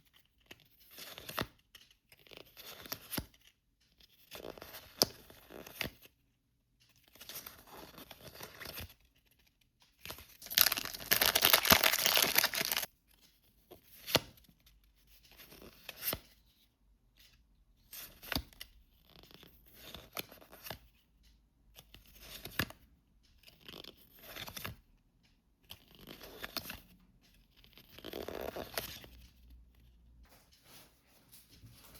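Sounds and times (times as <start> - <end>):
wrapper crinkling: 10.4 - 12.9
wrapper tearing: 10.4 - 12.9.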